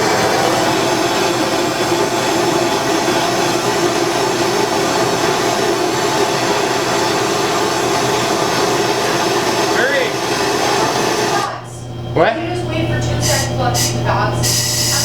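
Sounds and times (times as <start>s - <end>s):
torch flame hissing: 0.0s - 11.6s.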